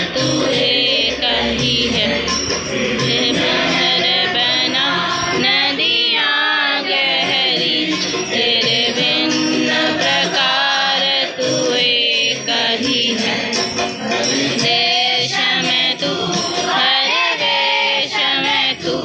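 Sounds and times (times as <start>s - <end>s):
musical accompaniment: 0.0s - 19.0s
person singing a prayer song: 0.0s - 19.0s.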